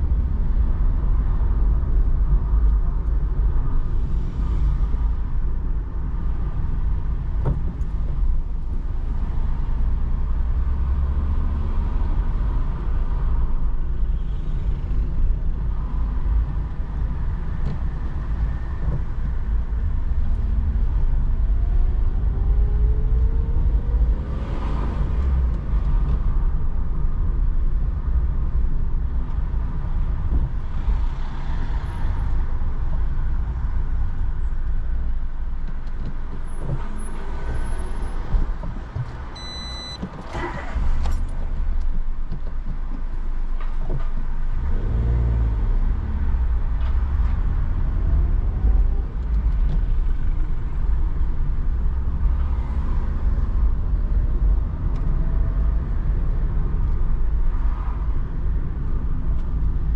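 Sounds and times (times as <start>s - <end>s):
car road and engine rumble: 0.0s - 59.9s
electronic beep: 39.4s - 40.0s.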